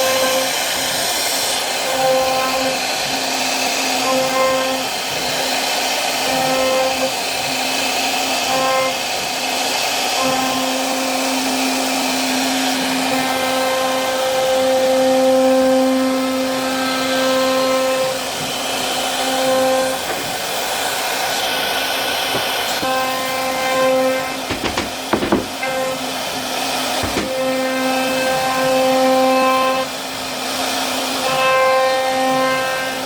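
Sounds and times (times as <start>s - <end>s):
sharp knocks: 22.3s - 26.2s, 27.0s - 27.8s.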